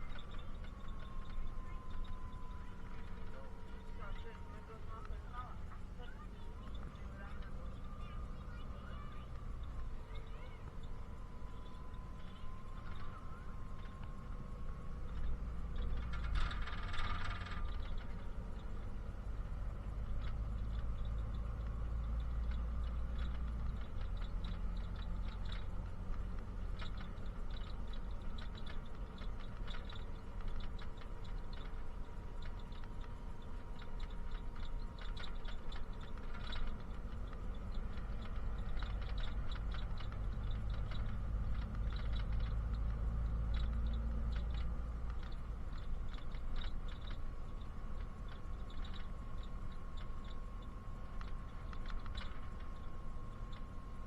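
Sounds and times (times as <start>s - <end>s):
bus engine and road rumble: 0.0s - 54.0s
faint whine: 0.0s - 54.0s
quick irregular clicks: 15.0s - 53.9s.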